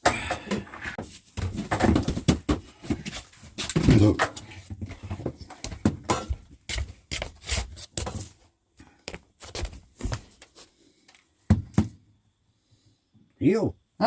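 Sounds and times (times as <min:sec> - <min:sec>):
knocks and rattles of parts: 0:00.0 - 0:06.6.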